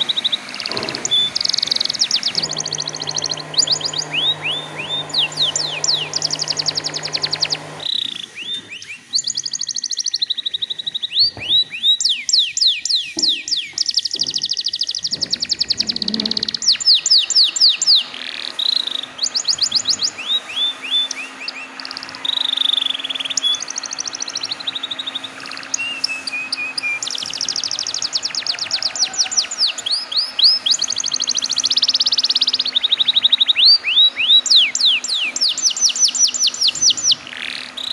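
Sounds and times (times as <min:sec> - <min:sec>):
low hum: 0:00.0 - 0:07.9
canary singing trills: 0:00.0 - 0:37.9.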